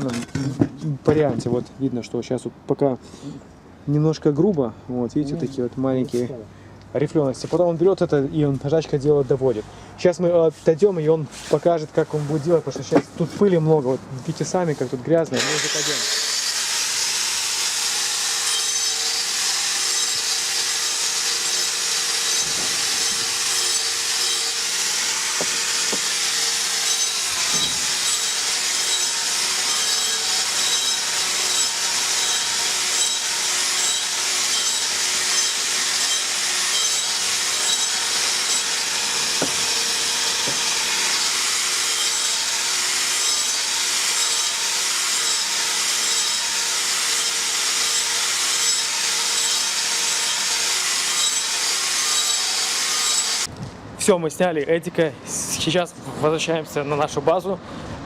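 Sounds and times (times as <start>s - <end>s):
angle grinder grinding brick: 14.3s - 53.5s.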